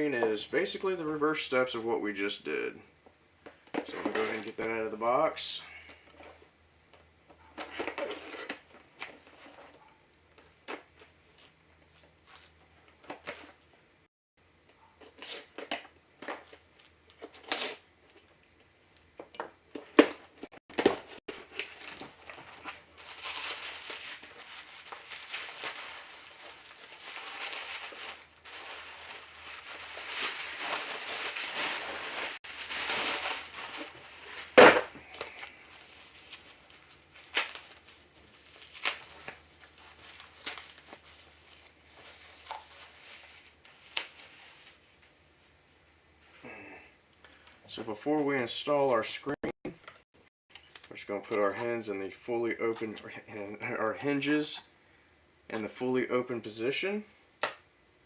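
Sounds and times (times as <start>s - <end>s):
plastic and cardboard crinkling: 3.5s - 4.9s, 19.7s - 45.1s
packaging rustling: 20.8s - 44.8s.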